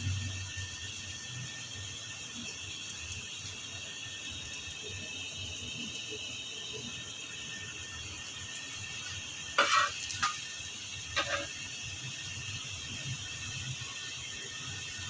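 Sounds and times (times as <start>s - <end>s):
flatbread sizzling in oil: 0.0s - 15.0s
knocks or scrapes on pan: 9.0s - 11.6s.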